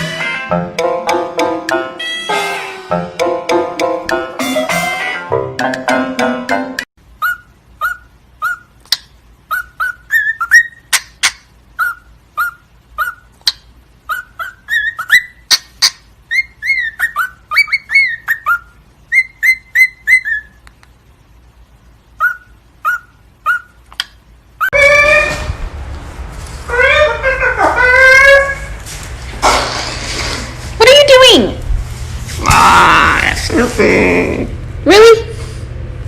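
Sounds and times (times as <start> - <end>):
parrot whistling chirps: 7.2 - 20.6, 22.2 - 23.8, 24.6 - 25.5.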